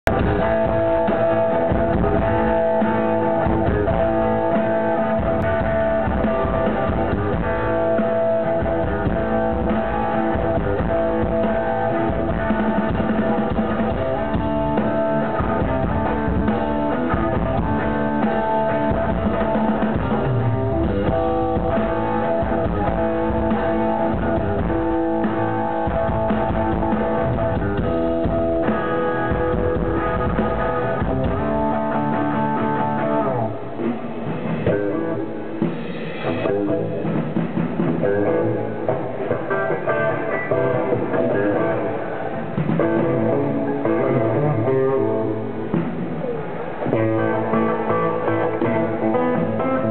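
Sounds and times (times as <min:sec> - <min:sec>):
live rock band playing: 0:00.0 - 0:49.9.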